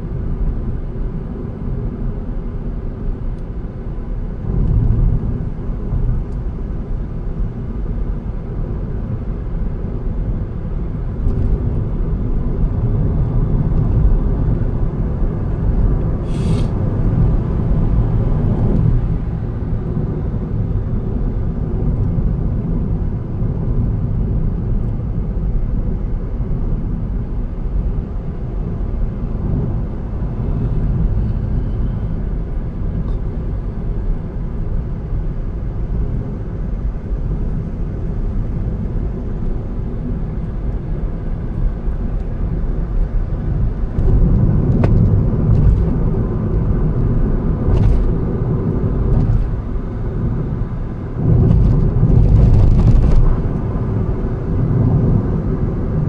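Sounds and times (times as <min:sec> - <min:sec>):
car engine and tyre rumble: 0:00.0 - 0:56.0
brief high hiss: 0:16.2 - 0:16.8.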